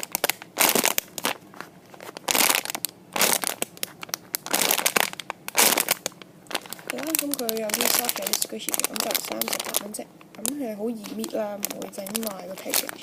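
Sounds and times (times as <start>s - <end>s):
plastic packaging crinkling: 0.0s - 13.0s.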